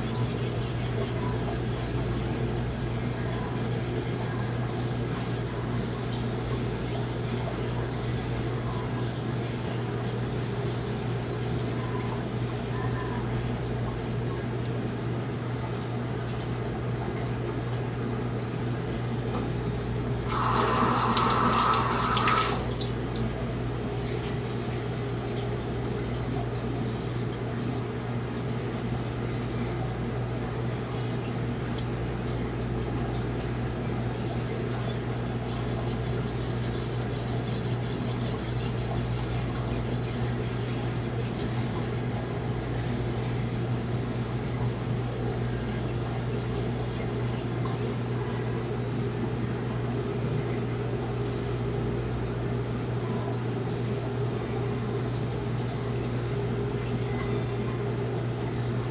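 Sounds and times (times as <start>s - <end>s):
faint scratchy strokes: 0.0s - 14.2s, 34.2s - 48.0s
steady low hum: 0.0s - 15.5s, 19.6s - 52.9s
water running from tap: 20.3s - 23.4s, 34.2s - 48.0s.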